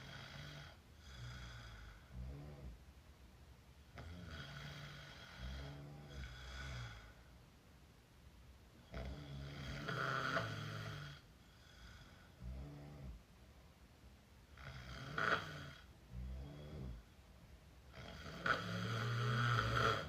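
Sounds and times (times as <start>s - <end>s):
woman snoring: 0.0s - 2.8s, 4.0s - 7.2s, 8.8s - 13.2s, 14.6s - 17.0s, 17.9s - 20.0s.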